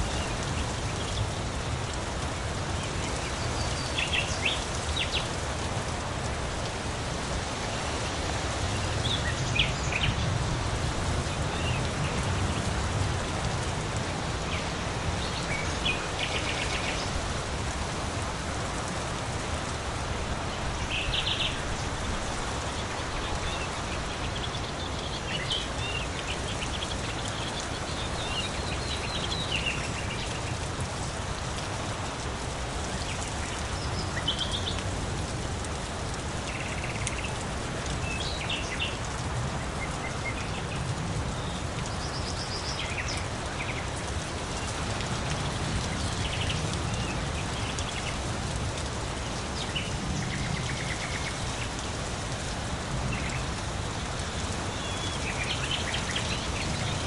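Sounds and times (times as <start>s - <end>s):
steady rain falling: 0.0s - 57.0s
birds chirping: 20.7s - 30.6s.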